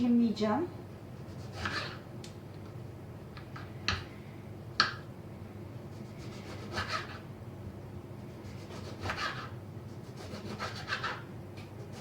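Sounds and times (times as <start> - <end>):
knife sawing through lemon: 1.3 - 2.0, 6.2 - 7.2, 8.5 - 11.2.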